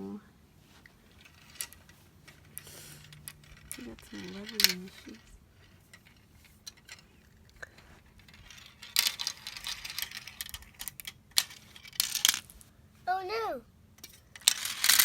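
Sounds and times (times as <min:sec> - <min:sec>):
marbles clattering down a run: 0:03.0 - 0:07.0, 0:07.6 - 0:12.6, 0:14.3 - 0:15.0.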